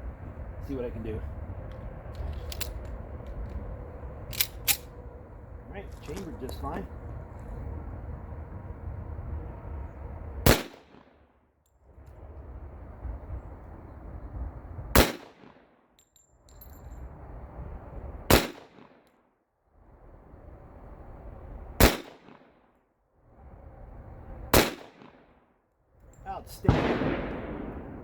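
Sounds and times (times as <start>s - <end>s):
pistol shots: 10.5s - 10.9s, 15.0s - 15.5s, 18.3s - 18.8s, 21.8s - 22.4s, 24.6s - 25.1s, 26.6s - 28.0s.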